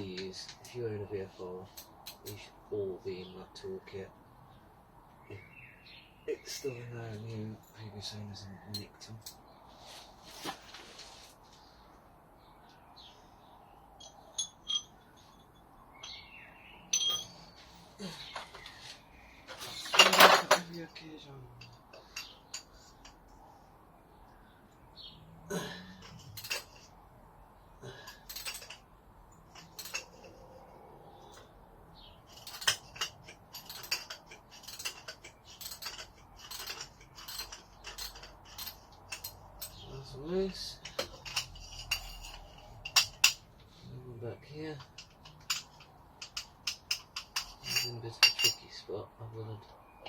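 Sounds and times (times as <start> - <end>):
metal hand tools clinking: 1.7 - 2.5, 8.7 - 9.4, 14.0 - 16.3, 16.9 - 17.6, 19.5 - 23.2, 25.5 - 26.9, 27.8 - 30.6, 32.2 - 43.5, 44.7 - 48.8
metal hand tools clicking: 32.3 - 39.8.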